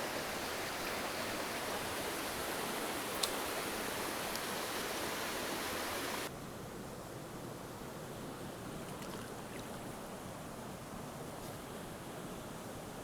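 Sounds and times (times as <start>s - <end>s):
mountain creek running: 0.0s - 6.3s.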